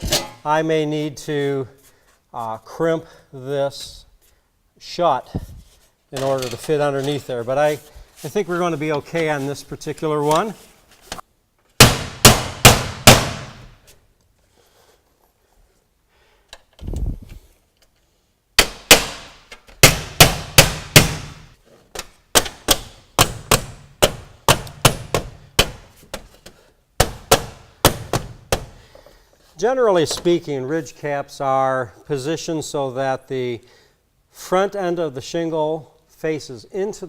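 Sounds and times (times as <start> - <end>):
hammer clanging on steel: 0.0 - 0.5.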